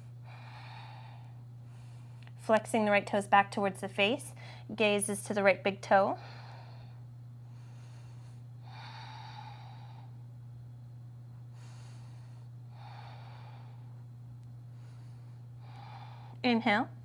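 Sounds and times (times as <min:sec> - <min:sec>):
low electrical hum: 0:00.0 - 0:17.0
person breathing: 0:00.2 - 0:02.3, 0:04.4 - 0:04.7, 0:06.2 - 0:10.2, 0:11.5 - 0:14.0, 0:14.7 - 0:16.4.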